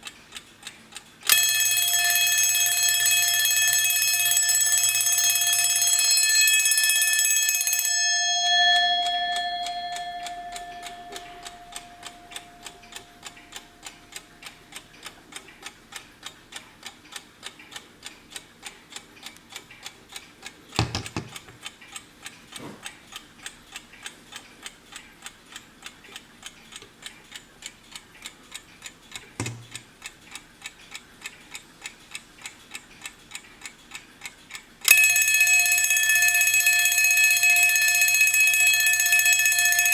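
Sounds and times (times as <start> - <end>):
clock ticking: 0.0 - 39.9
alarm clock bell ringing: 1.3 - 14.6, 34.9 - 39.9
clock knocks: 20.8 - 21.6, 29.4 - 29.9.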